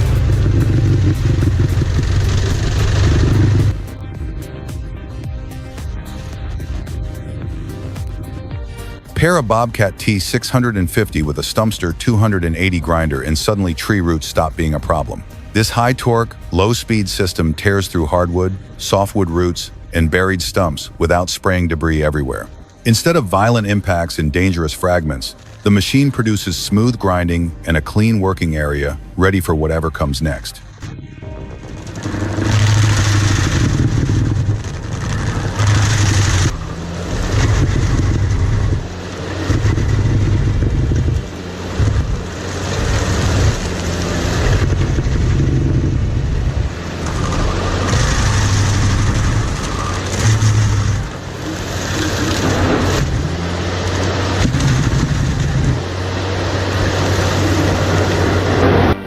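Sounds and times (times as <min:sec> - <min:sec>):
stump grinder grinding: 0:00.0 - 0:04.6, 0:25.2 - 0:26.1, 0:31.5 - 0:59.0
loader engine under load: 0:00.0 - 0:05.2, 0:30.8 - 0:59.0.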